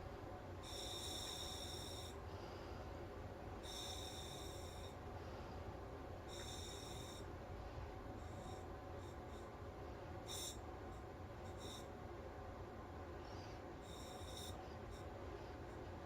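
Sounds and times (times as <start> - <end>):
breathing through regulator hiss: 0.6 - 3.0, 3.6 - 5.7, 13.2 - 15.6.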